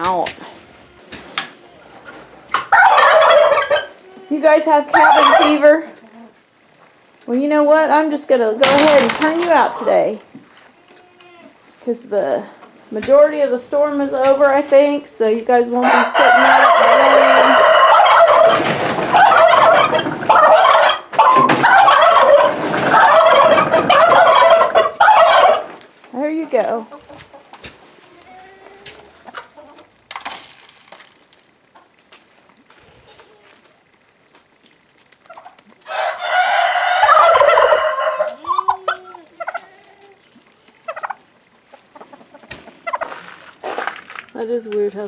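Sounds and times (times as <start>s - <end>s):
turkeys gobbling: 0.0s - 6.4s, 15.8s - 30.3s, 35.0s - 43.8s.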